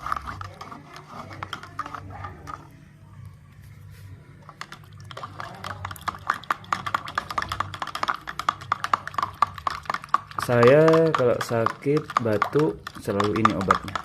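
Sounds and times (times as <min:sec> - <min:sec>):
spoon clinking against container: 0:04.6 - 0:14.0.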